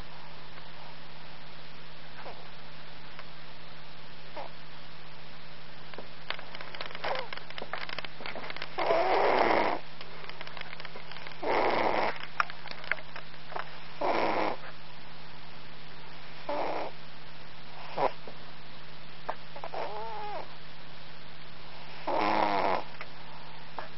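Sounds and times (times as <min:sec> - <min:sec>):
steady low hum: 0:00.0 - 0:23.9
cat snoring: 0:08.8 - 0:09.8, 0:11.4 - 0:12.2, 0:14.0 - 0:14.7, 0:16.4 - 0:17.0, 0:17.8 - 0:18.2, 0:19.6 - 0:20.5, 0:21.8 - 0:22.9.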